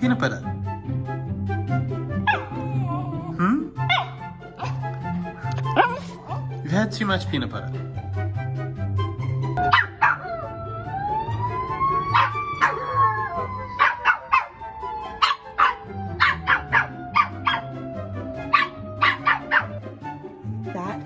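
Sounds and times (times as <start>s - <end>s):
background music: 0.0s - 21.0s
dog barking and yipping: 2.2s - 2.7s, 3.8s - 4.8s, 9.6s - 10.6s, 12.1s - 17.8s, 18.4s - 19.8s
dog whining: 2.2s - 4.8s, 5.6s - 6.5s, 12.2s - 14.4s.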